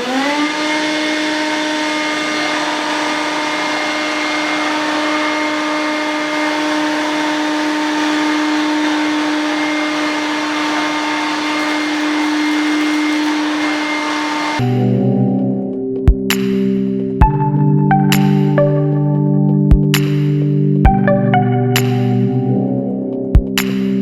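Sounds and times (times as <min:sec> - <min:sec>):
vacuum cleaner running: 0:00.0 - 0:15.1.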